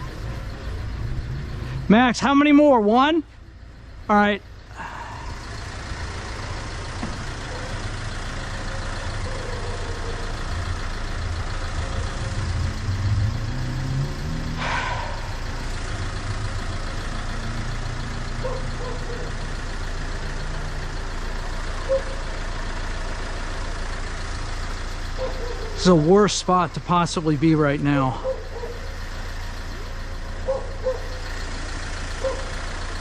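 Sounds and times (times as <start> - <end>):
van engine idling: 0.0 - 33.0.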